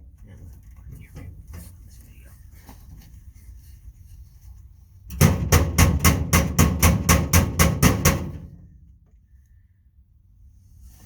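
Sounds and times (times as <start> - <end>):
hammer striking steel box: 5.1 - 8.6.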